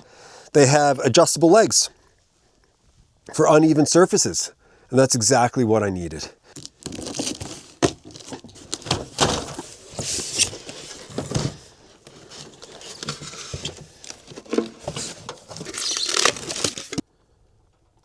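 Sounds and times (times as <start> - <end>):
rustling: 6.5 - 17.0.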